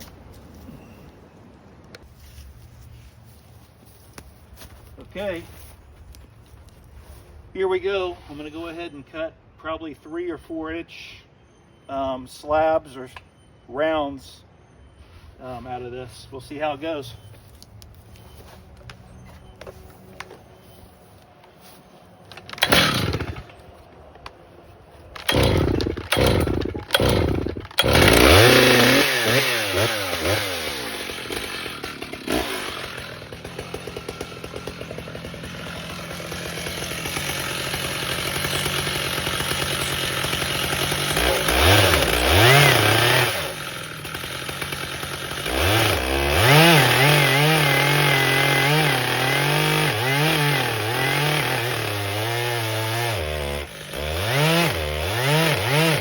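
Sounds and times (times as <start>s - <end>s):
chainsaw cutting log: 22.3s - 23.6s, 25.2s - 56.0s
chainsaw revving: 22.3s - 23.6s, 25.2s - 56.0s.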